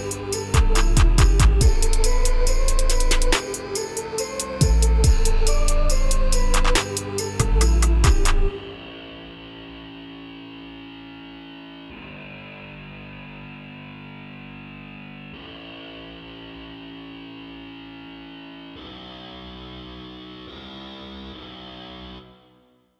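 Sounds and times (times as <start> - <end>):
beat with heavy drum hits: 0.0 - 8.5
held synth chords: 0.0 - 12.0.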